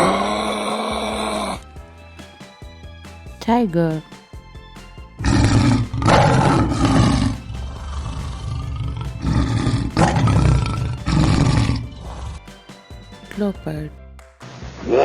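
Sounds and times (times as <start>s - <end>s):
tiger roaring and growling: 0.0s - 1.6s, 5.2s - 12.4s.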